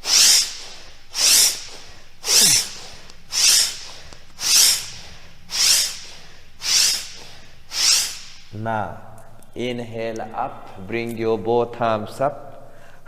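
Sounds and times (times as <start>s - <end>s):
person breathing out hard: 0.0s - 7.8s, 12.7s - 13.0s.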